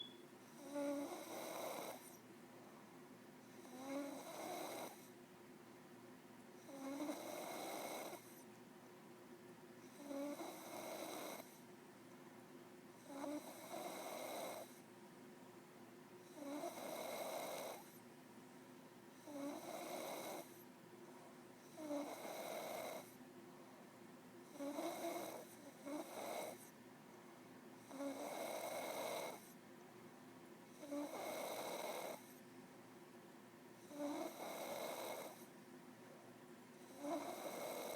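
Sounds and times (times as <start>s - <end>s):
woman snoring: 0.6s - 2.0s, 3.7s - 5.0s, 6.7s - 8.2s, 10.0s - 11.5s, 19.2s - 20.5s, 21.7s - 23.0s, 24.5s - 26.6s, 30.8s - 32.2s, 33.9s - 35.4s, 36.9s - 37.9s.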